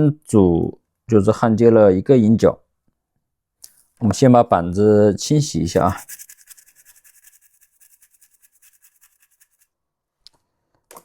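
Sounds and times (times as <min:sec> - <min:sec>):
brush scrubbing circuit board: 0:05.7 - 0:09.7.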